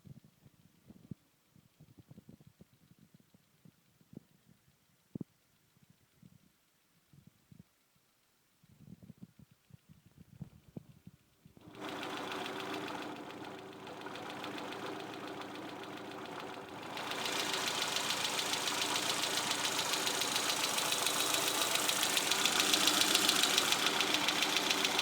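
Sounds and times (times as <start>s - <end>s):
car engine running: 11.7s - 25.0s
fast ticking clatter: 11.7s - 25.0s.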